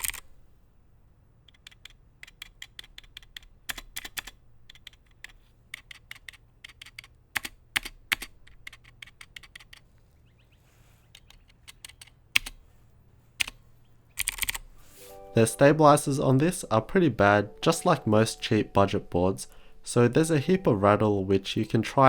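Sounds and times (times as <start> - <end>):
mechanical keyboard clicks: 0.0 - 0.3, 1.5 - 9.8, 11.2 - 12.6, 13.4 - 13.6, 14.2 - 14.7.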